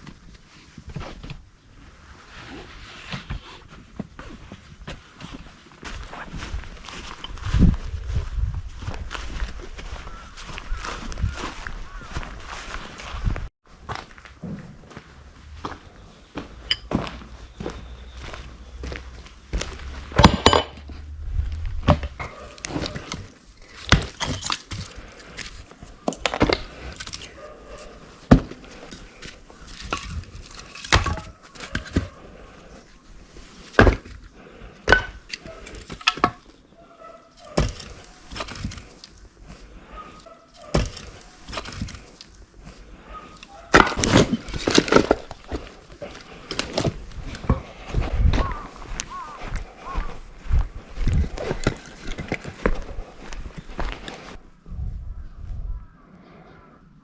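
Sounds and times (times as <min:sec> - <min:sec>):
hard objects clattering: 0:19.6 - 0:21.1, 0:21.8 - 0:32.2, 0:33.7 - 0:36.5, 0:37.5 - 0:39.2, 0:43.2 - 0:47.8.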